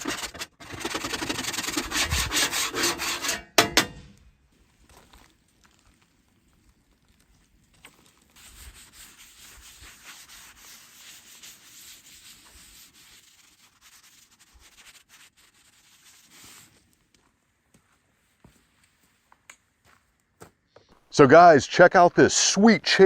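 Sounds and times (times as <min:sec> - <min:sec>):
gritty scraping on steel cooktop: 0:00.0 - 0:03.9.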